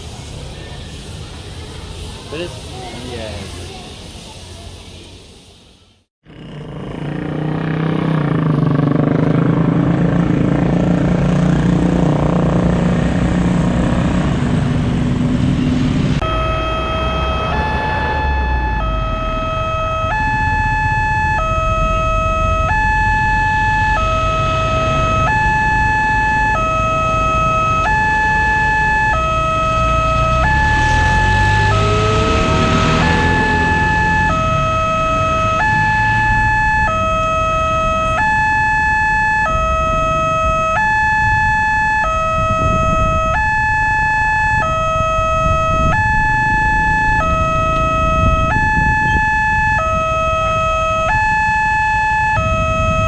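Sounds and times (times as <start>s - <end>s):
low engine drone: 0.0s - 53.0s
traffic rumble: 0.0s - 53.0s
two-tone level crossing siren: 16.1s - 53.0s.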